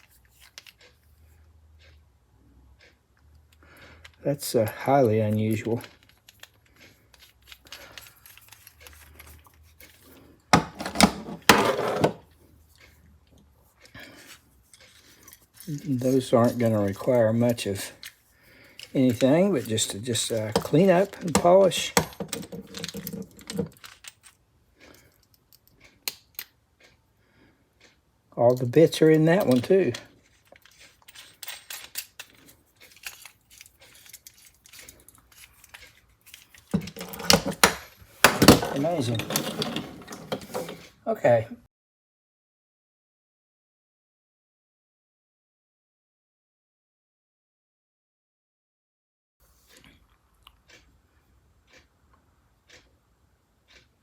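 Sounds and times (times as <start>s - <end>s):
metal clatter and rattling: 10.6s - 12.3s, 19.1s - 24.3s, 30.5s - 40.9s.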